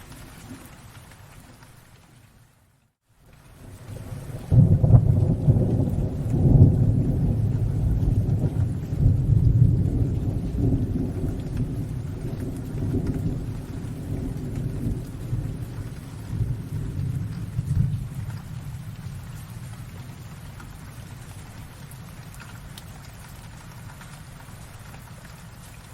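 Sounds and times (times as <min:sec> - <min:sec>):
steady rain: 0:00.0 - 0:25.9
thunder rumbling: 0:03.6 - 0:22.7.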